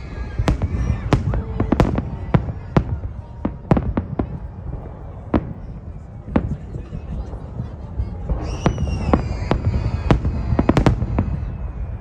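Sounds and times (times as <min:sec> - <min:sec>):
firework bangs: 0:00.0 - 0:12.0
high falling whistle: 0:08.4 - 0:11.6.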